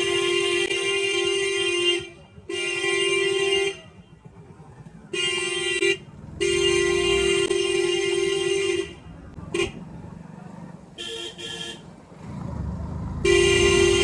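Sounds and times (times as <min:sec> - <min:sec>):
motorcycle horn blasts: 0:00.0 - 0:04.0, 0:05.2 - 0:09.9, 0:11.0 - 0:11.9, 0:13.2 - 0:14.0.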